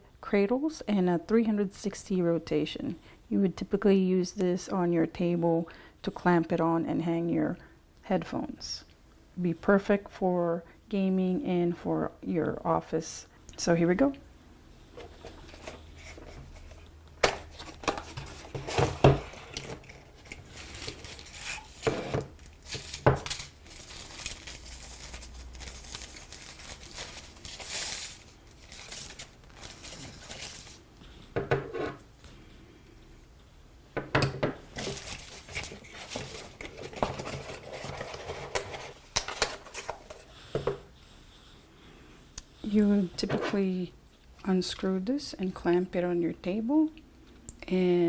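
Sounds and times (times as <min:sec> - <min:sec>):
packaging rustling and crinkling: 0:15.0 - 0:31.1, 0:34.7 - 0:40.4.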